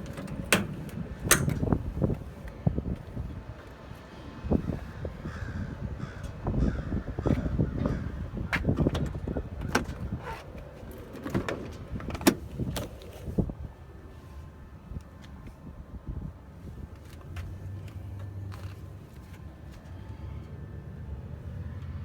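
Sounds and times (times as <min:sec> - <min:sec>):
metal clunks and scrapes: 0:00.0 - 0:02.4.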